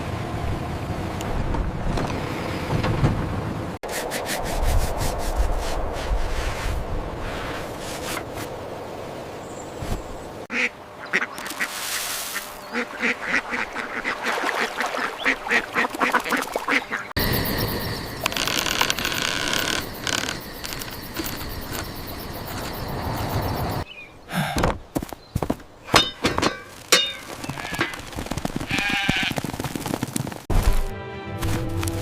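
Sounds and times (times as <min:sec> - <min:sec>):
ducks quacking: 0:10.5 - 0:17.1.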